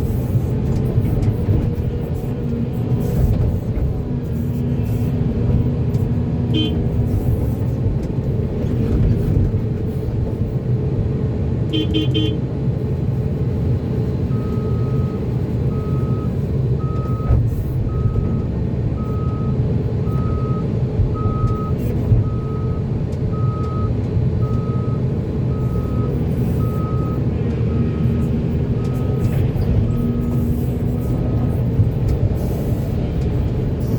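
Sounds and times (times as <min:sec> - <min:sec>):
diesel machinery running: 0:00.0 - 0:33.9
horn toots: 0:06.5 - 0:06.8, 0:11.7 - 0:12.4
reversing alarm beeping: 0:14.3 - 0:28.2.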